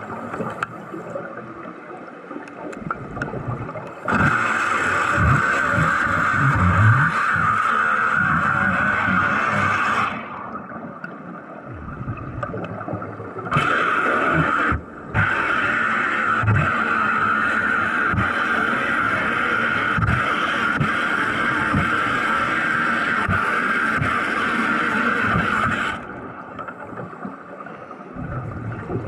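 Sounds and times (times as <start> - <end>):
low gurgling thuds: 2.7 - 10.8, 11.6 - 15.4, 28.1 - 29.0.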